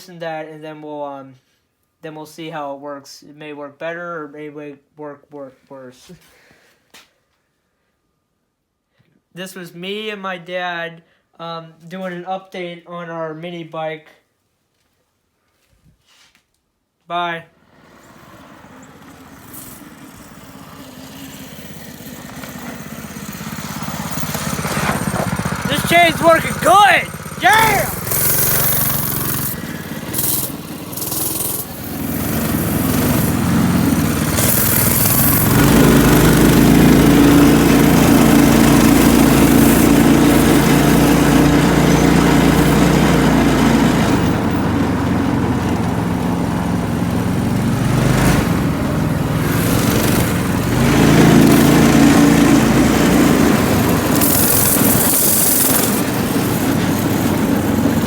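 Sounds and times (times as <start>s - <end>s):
mini bike engine running: 17.8s - 58.0s.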